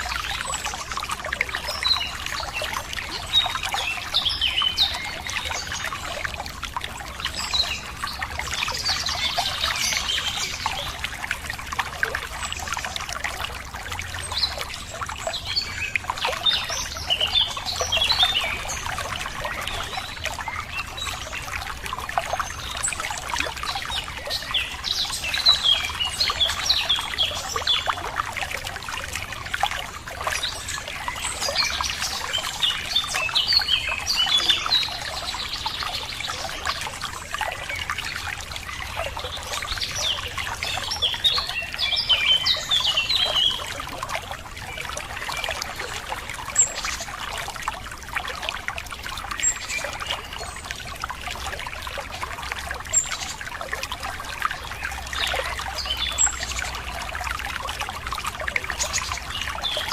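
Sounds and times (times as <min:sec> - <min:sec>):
water trickling: 0:00.0 - 0:59.9
small birds chirping: 0:30.1 - 0:47.2.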